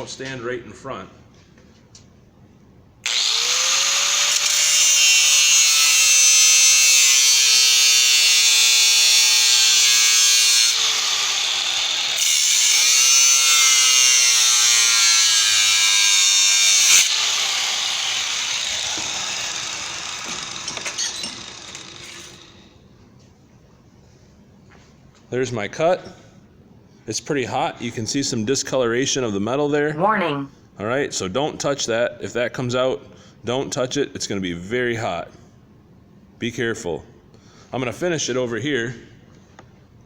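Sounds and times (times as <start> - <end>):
angle grinder cutting metal: 3.0 - 22.6
grinder winding down: 3.0 - 22.6.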